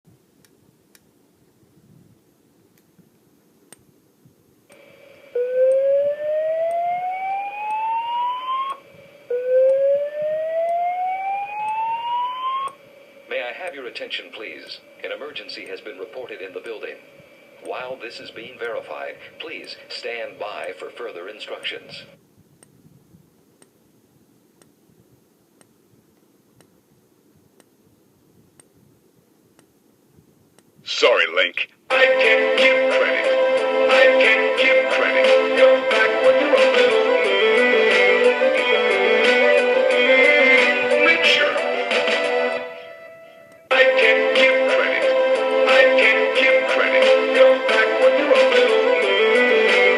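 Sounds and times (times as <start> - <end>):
fire alarm whoop tone: 5.4 - 12.8
faint regular ticks: 27.6 - 27.8.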